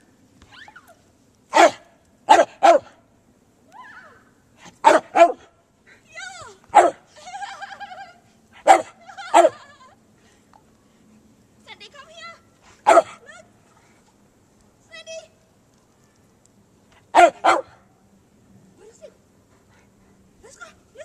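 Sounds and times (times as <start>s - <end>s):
dog barking: 1.5s - 3.0s, 4.8s - 5.5s, 6.7s - 7.0s, 8.6s - 9.6s, 12.8s - 13.2s, 17.1s - 17.8s.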